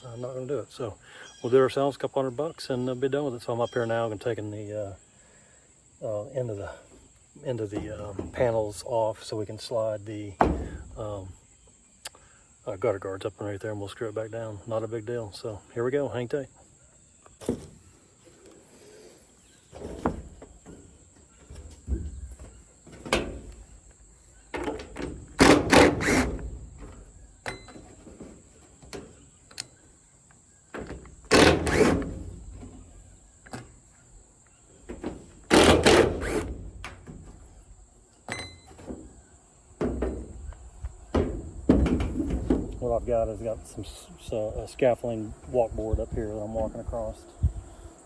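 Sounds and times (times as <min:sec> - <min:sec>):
crickets chirring: 0:00.0 - 0:48.0
footsteps on scaffolding board: 0:39.8 - 0:42.8.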